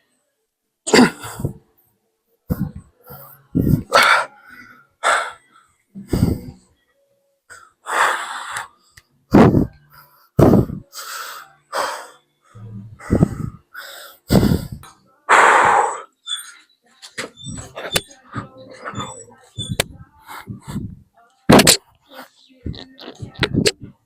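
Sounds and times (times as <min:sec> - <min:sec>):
man breathing hard: 0:06.1 - 0:06.6, 0:13.0 - 0:16.0, 0:20.3 - 0:21.0.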